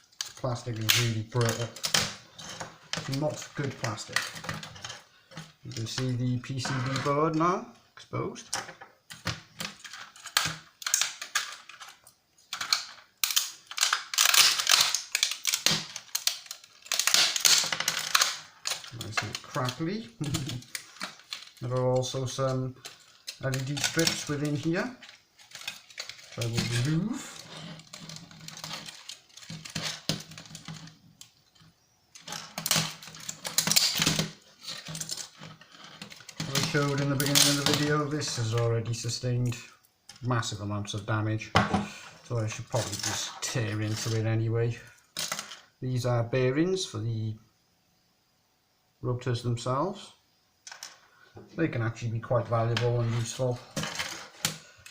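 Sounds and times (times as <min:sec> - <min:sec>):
plastic casing cracking and snapping: 0:09.1 - 0:21.7, 0:22.8 - 0:38.0.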